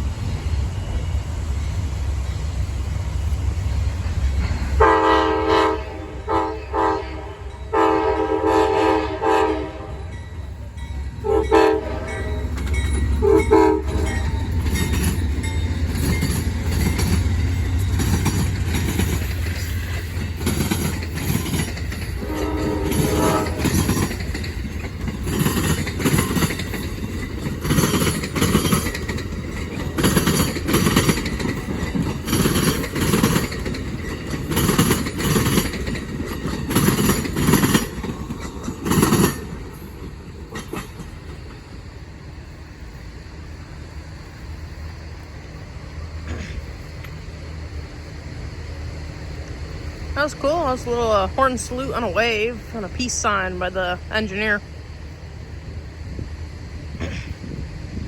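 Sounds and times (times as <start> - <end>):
low locomotive rumble: 0.0 - 58.0
locomotive horn blasts: 4.8 - 10.2, 11.2 - 12.6, 13.2 - 14.2, 22.2 - 24.0
train wheels clattering over rail joints: 10.2 - 42.4.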